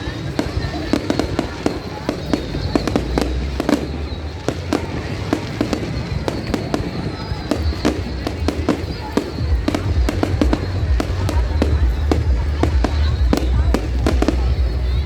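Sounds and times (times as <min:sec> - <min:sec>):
fireworks bangs and crackles: 0:00.0 - 0:15.0
low rumble: 0:09.4 - 0:15.0.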